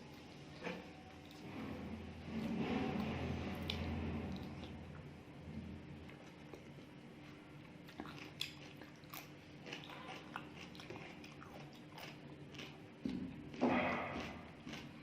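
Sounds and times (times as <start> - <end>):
person chewing food: 6.0 - 15.0.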